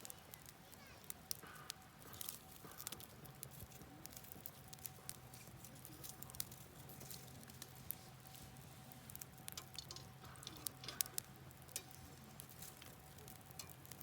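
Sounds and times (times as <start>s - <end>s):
campfire crackling and popping: 0.0s - 14.0s
faint steady hiss: 0.0s - 14.0s.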